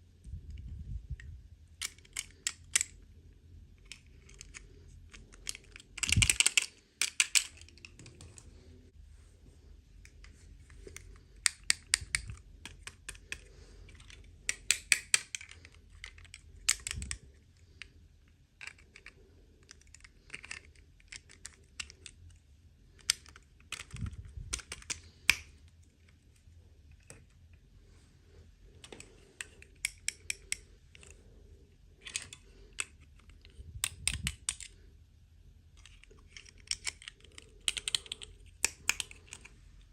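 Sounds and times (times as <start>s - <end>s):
plastic toy packaging clicks: 1.8s - 3.0s, 3.8s - 8.2s, 11.4s - 17.2s, 18.6s - 22.2s, 23.0s - 25.5s, 32.0s - 34.7s, 35.8s - 39.5s.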